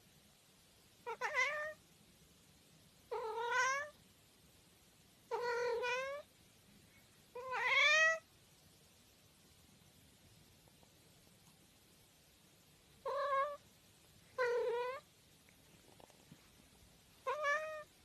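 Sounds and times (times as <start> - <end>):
cat meowing: 1.0 - 1.8, 3.1 - 3.9, 5.3 - 6.3, 7.4 - 8.2, 13.0 - 13.6, 14.4 - 15.0, 17.2 - 17.9.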